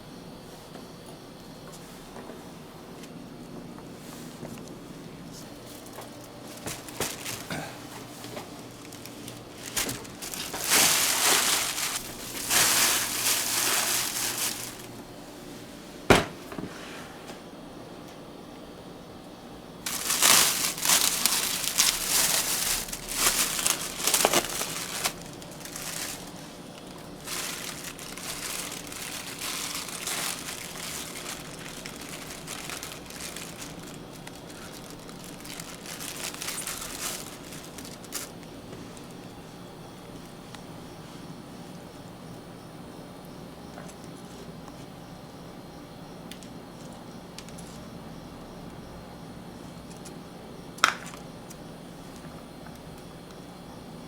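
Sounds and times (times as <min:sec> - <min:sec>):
paper or plastic crinkling: 0:05.3 - 0:15.1, 0:19.8 - 0:39.2.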